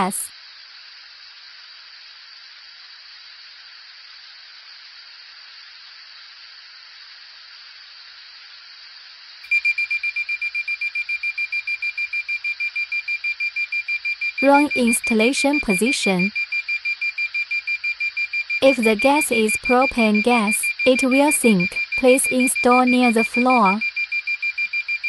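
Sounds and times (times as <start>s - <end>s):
steady hiss: 0.2s - 14.4s
gas alarm beeping rapidly: 9.5s - 25.0s.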